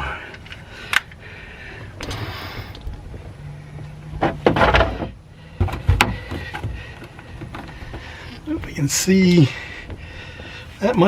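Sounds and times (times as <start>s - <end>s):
handling clicks and knocks: 3.8s - 10.6s.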